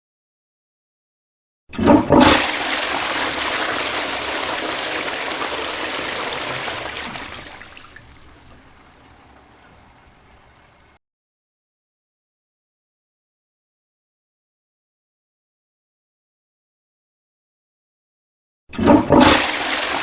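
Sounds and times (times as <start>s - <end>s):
loud rush of water: 2.2s - 11.0s.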